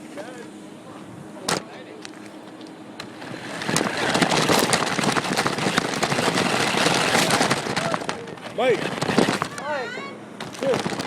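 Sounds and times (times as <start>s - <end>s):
fireworks crackling: 3.2s - 9.6s.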